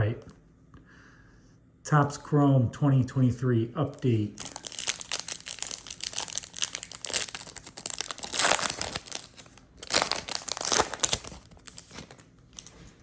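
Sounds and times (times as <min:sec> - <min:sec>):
wrapper tearing and crinkling: 0:04.4 - 0:12.7.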